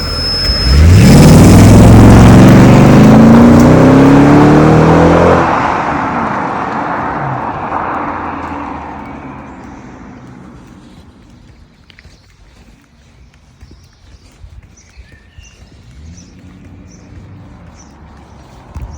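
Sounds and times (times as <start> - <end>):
car engine accelerating hard: 0.0 - 11.7, 15.5 - 18.9.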